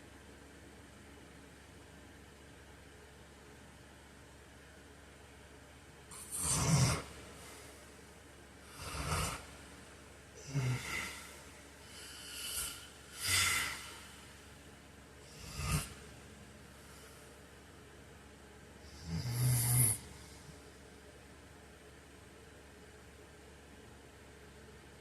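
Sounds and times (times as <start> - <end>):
man snoring: 6.1 - 7.8, 8.6 - 9.7, 10.4 - 14.4, 15.2 - 16.0, 18.8 - 20.4.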